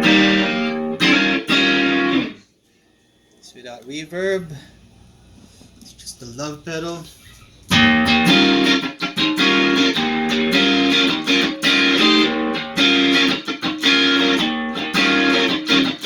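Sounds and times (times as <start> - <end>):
overdriven electric guitar chords: 0.0 - 2.4, 7.7 - 16.0.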